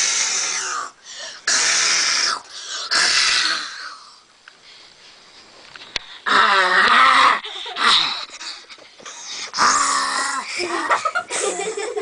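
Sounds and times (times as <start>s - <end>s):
children making hissing mouth sounds: 0.0s - 4.2s.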